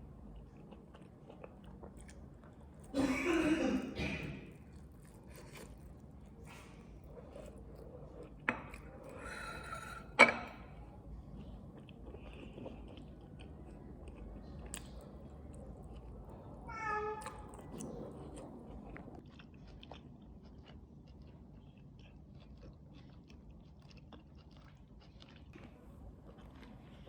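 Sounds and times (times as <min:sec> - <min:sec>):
soft chewing: 0:00.0 - 0:03.0, 0:03.8 - 0:27.0
cat meowing: 0:16.7 - 0:17.6.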